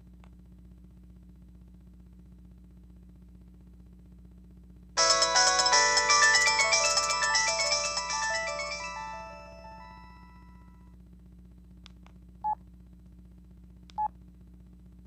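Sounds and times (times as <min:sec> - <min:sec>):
phone chime tune: 0:05.0 - 0:10.3.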